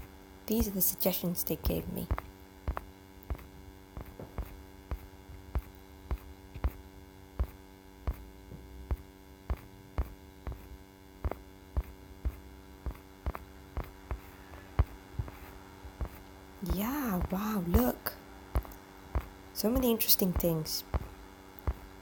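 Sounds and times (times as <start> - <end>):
electrical mains hum: 0.0 - 22.0.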